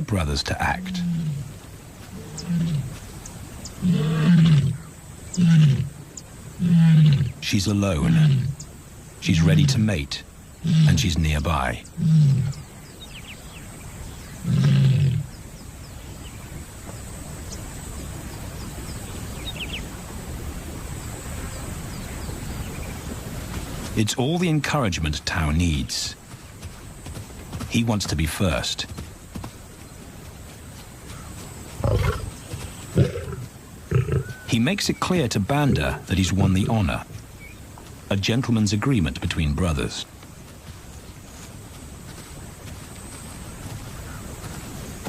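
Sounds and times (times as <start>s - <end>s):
lioness moaning calls: 0.7s - 3.0s, 3.8s - 6.0s, 11.9s - 12.7s, 31.8s - 34.5s.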